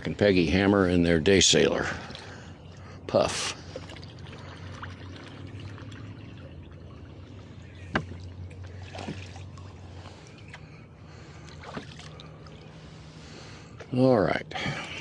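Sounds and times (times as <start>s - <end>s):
water splashing off oars: 2.0s - 13.8s.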